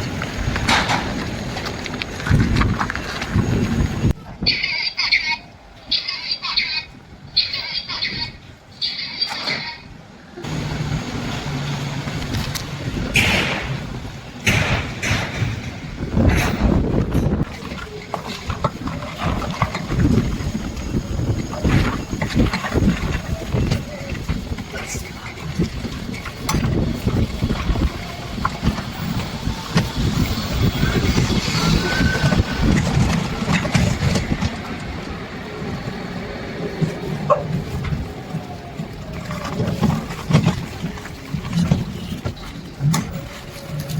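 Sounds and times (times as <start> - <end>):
electric vehicle humming: 0.0 - 4.2, 8.0 - 43.9
wind buffeting microphone: 0.0 - 4.6, 10.4 - 43.9
loud rushes of noise: 10.4 - 24.6, 25.6 - 40.0
knocks and rattles: 12.1 - 20.6.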